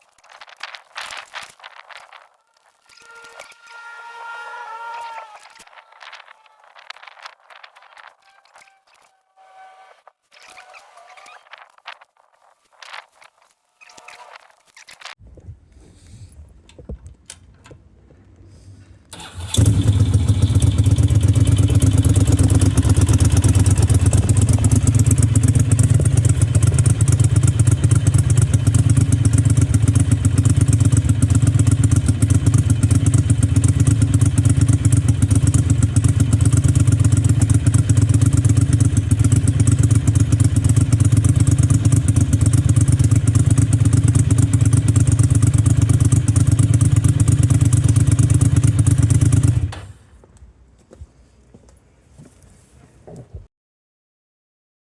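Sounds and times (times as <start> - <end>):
motorcycle engine running: 19.2 - 49.7.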